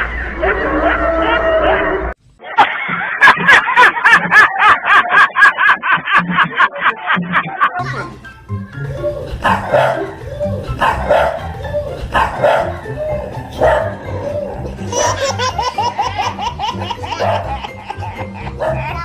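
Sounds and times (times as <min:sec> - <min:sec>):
background music with beat: 0:07.8 - 0:17.6
dog barking: 0:09.4 - 0:10.1, 0:10.8 - 0:11.5, 0:12.1 - 0:12.8, 0:13.6 - 0:14.0, 0:17.2 - 0:17.5, 0:18.6 - 0:18.9.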